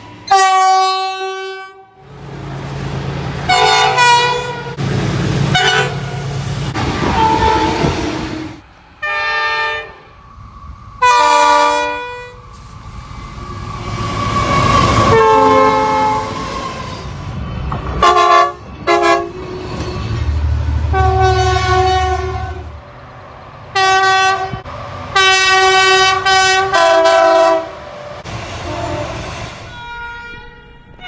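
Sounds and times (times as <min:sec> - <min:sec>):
train air horn blasts: 0:00.3 - 0:02.0, 0:03.5 - 0:04.8, 0:05.5 - 0:10.1, 0:11.0 - 0:12.7, 0:14.3 - 0:17.2, 0:18.0 - 0:19.4, 0:20.9 - 0:22.7, 0:23.8 - 0:27.9, 0:28.5 - 0:31.0.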